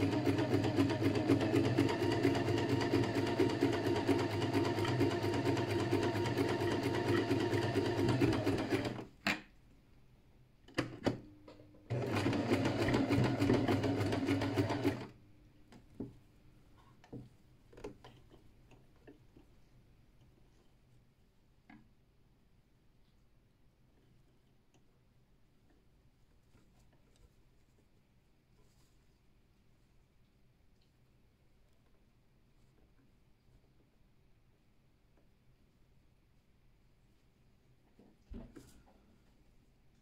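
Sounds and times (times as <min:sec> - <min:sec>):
electric sewing machine stitching: 0:00.0 - 0:09.1, 0:11.9 - 0:15.1.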